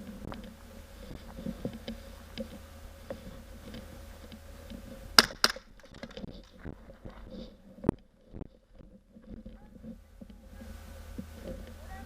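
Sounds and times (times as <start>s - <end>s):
rustling: 0.0s - 12.0s
airsoft pistol shots: 5.2s - 5.6s.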